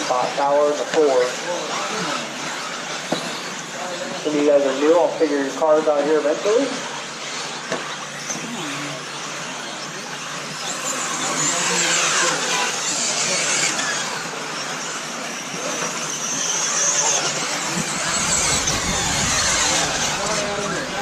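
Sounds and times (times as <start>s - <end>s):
rc car motors whining: 0.0s - 21.0s
low rumble: 17.8s - 21.0s.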